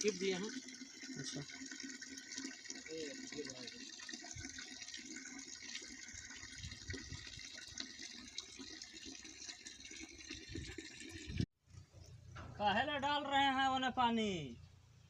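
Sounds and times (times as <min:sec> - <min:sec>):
running water splashing: 0:00.0 - 0:11.5.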